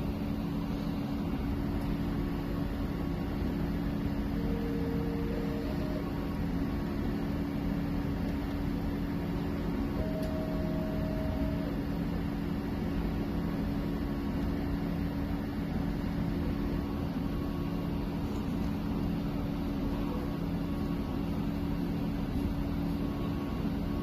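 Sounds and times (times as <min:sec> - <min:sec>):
printer fan hum: 0:00.0 - 0:24.0
stepper motors whining: 0:04.2 - 0:06.3, 0:10.0 - 0:11.8.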